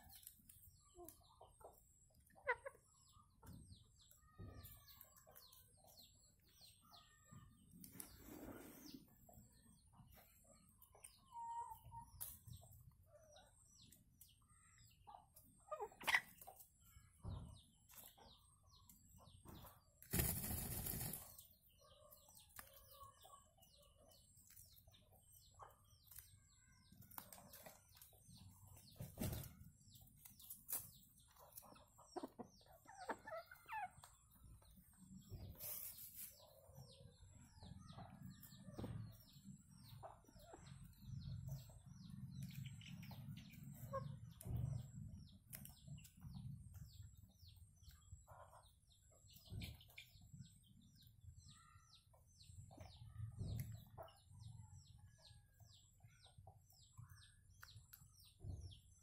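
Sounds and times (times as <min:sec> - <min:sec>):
bird chirps and calls: 0:20.7 - 0:59.0.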